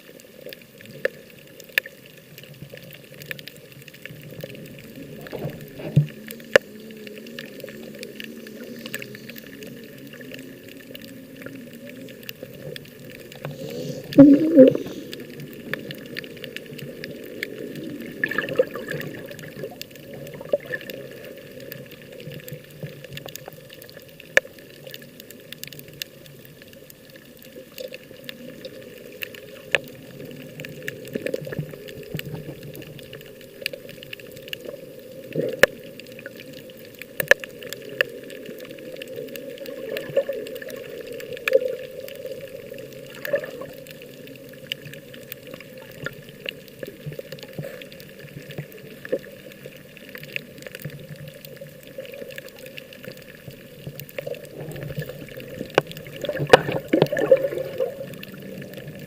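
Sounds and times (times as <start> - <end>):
seawater sloshing and gurgling: 4.2 - 22.3, 37.3 - 49.7, 50.4 - 59.0.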